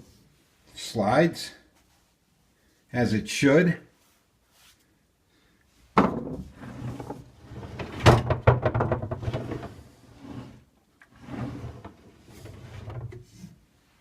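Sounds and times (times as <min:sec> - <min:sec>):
drawer sliding on slides: 0:06.4 - 0:08.3, 0:09.1 - 0:13.6.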